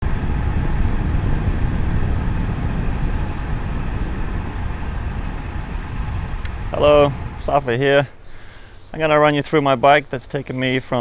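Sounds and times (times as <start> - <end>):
low ambient rumble: 0.0 - 8.2.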